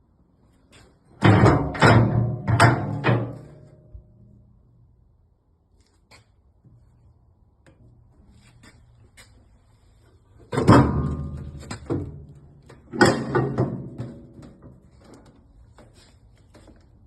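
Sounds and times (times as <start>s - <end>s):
steel door clanging shut: 1.2s - 3.7s, 12.9s - 14.1s.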